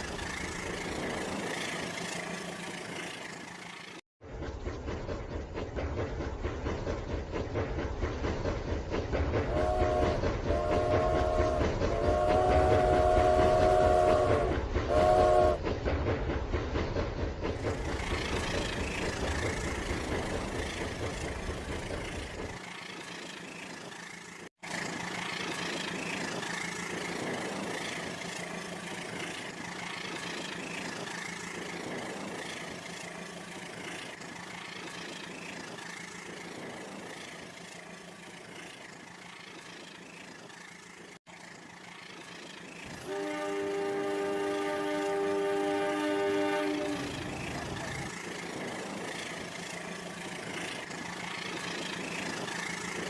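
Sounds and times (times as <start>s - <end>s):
toy train motor humming: 18.0s - 53.0s.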